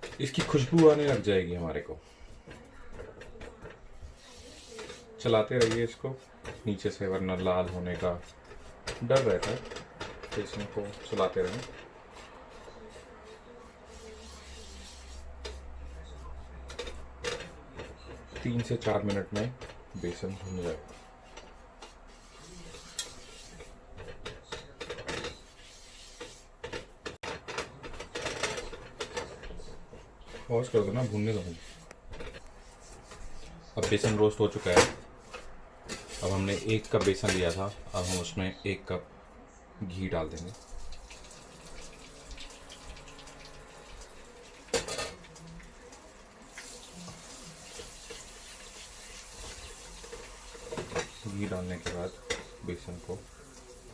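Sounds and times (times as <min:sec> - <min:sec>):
utensil scraping and clinking in pan: 0:00.0 - 0:38.5, 0:40.2 - 0:53.9
liquid hissing in a pan: 0:40.5 - 0:53.9.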